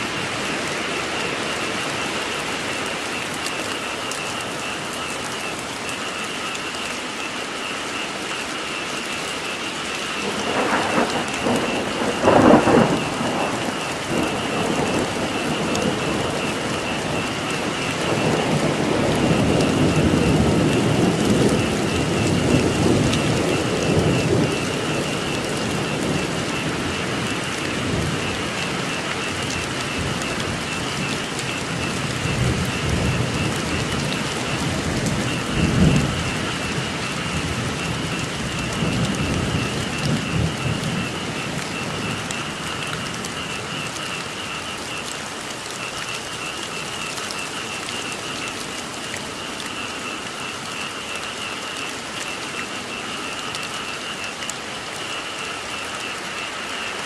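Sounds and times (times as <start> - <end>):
frogs calling: 0.0 - 57.0
steady rain: 0.0 - 57.0
rolling thunder: 10.1 - 44.6.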